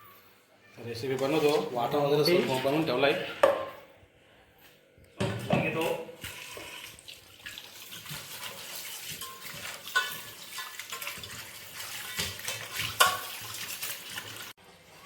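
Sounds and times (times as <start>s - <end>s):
running water splashing: 6.2s - 14.6s.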